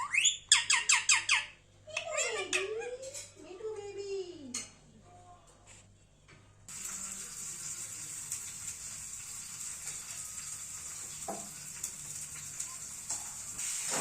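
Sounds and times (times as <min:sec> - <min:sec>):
steady sizzling hiss: 0:06.7 - 0:14.0.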